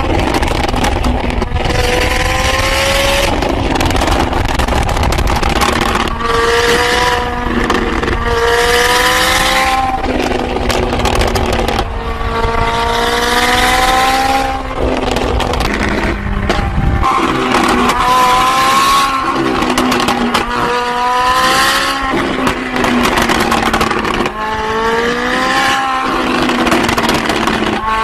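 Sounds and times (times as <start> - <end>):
car engine accelerating: 0.0 - 28.0.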